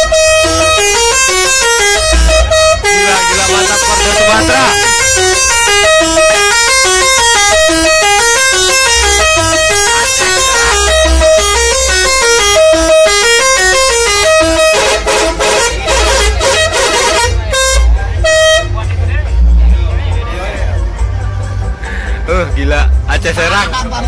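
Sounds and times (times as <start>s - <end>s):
musical bus horn tune: 0.0s - 18.9s.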